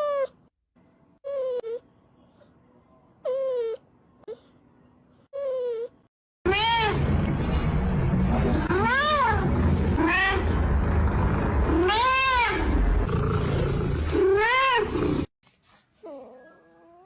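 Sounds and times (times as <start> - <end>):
low rumble and hiss: 6.5 - 14.2.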